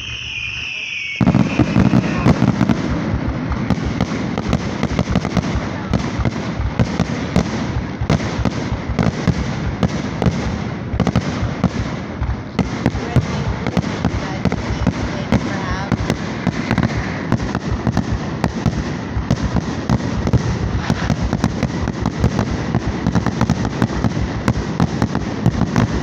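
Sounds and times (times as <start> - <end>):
fireworks bangs and crackling: 0.0 - 26.0.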